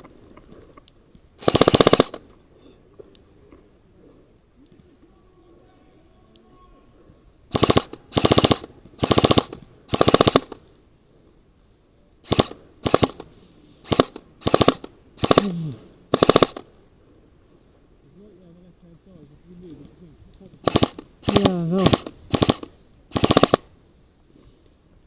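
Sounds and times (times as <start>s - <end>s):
airsoft rifle firing bursts: 1.4s - 2.2s, 7.5s - 10.6s, 12.2s - 16.7s, 20.6s - 23.7s.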